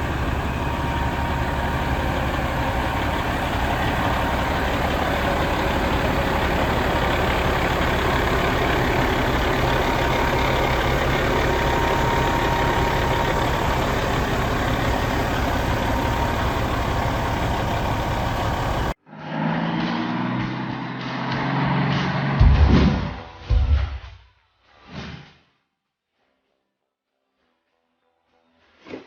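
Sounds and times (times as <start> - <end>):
truck diesel engine idling: 0.0 - 19.0
music: 21.9 - 24.4, 27.2 - 29.0.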